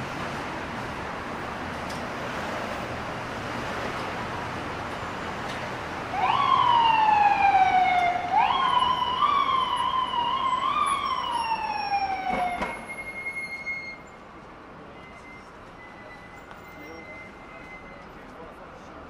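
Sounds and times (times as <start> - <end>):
street traffic: 0.0 - 19.0
emergency vehicle siren: 6.0 - 14.1.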